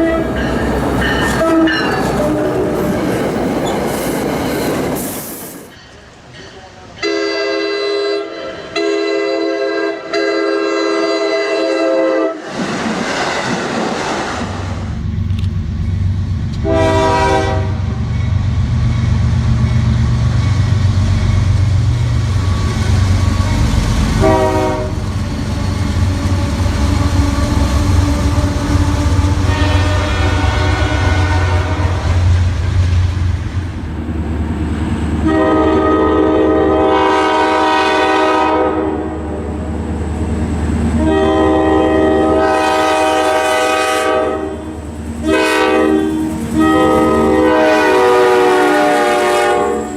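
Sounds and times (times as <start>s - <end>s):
locomotive air horn: 0.0s - 2.9s, 7.0s - 12.4s, 16.6s - 18.0s, 23.4s - 25.1s, 26.9s - 32.4s, 35.2s - 39.4s, 41.0s - 49.9s
rail clatter: 0.0s - 7.0s
train passing rumble: 0.0s - 49.9s.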